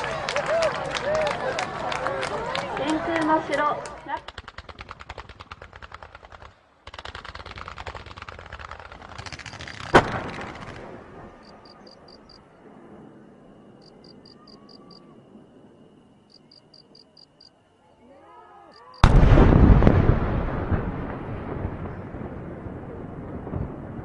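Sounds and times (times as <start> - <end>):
firecrackers crackling: 0.0 - 13.0, 19.0 - 24.0
loud firecracker bang: 9.2 - 11.4, 19.0 - 22.6.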